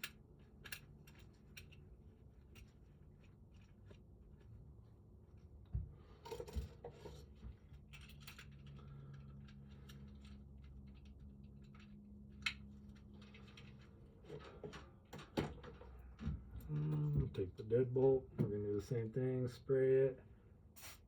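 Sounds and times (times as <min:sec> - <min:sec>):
lock parts and tools clicking: 0:00.0 - 0:01.9, 0:07.7 - 0:15.9
low steady hum: 0:00.0 - 0:20.8.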